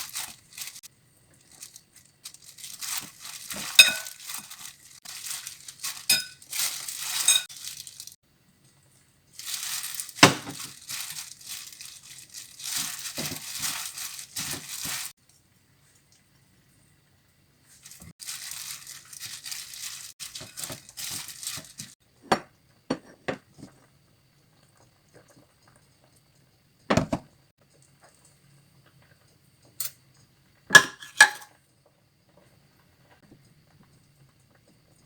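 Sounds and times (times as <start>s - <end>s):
wrapping crinkling and rustling: 0.0s - 8.2s, 9.3s - 15.2s, 17.7s - 22.0s
dishes knocking and clattering: 26.9s - 27.2s, 30.7s - 31.5s.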